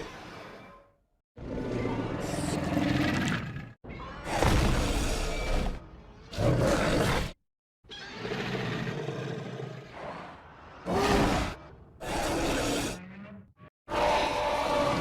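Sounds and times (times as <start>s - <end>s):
monster roars: 10.0s - 15.0s.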